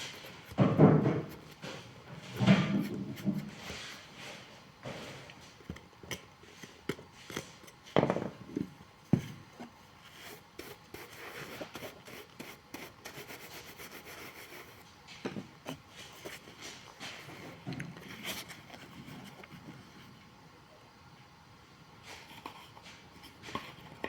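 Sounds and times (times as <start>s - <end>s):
scraping and rubbing on shoe sole: 9.6s - 14.8s.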